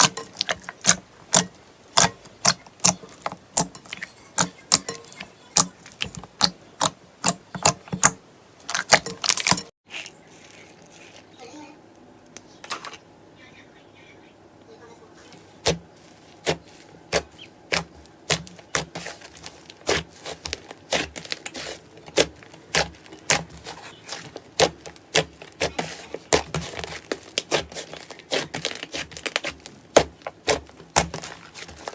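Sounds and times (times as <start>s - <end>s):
slime popping and crackling: 16.4s - 31.9s.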